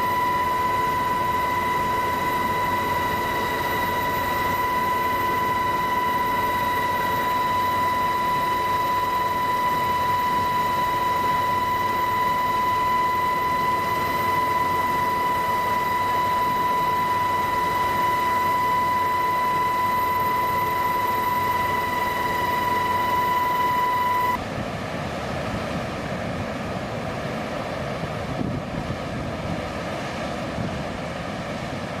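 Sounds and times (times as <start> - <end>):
high whine: 0.0 - 24.6
aircraft engine rush: 0.0 - 32.0.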